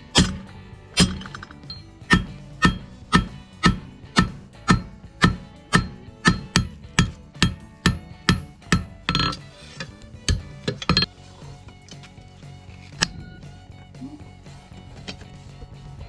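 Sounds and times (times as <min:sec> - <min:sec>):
hammer striking steel on anvil: 0:00.0 - 0:11.2.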